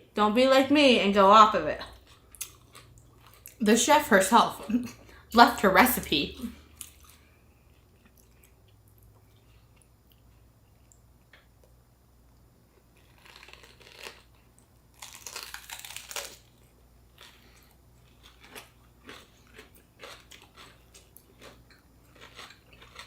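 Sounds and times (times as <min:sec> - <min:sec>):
crunchy biting and chewing: 0:12.7 - 0:23.0.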